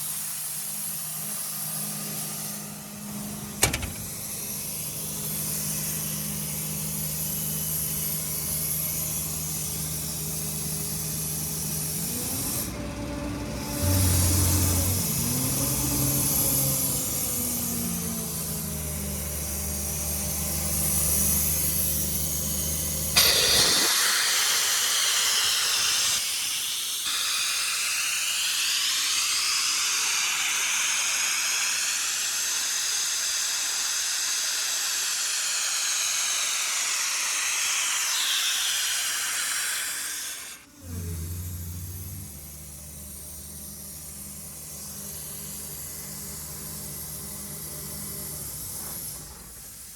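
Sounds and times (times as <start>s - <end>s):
compressed air hissing: 0.0s - 12.7s, 23.2s - 49.9s
diesel engine droning: 11.8s - 20.5s, 40.6s - 47.7s.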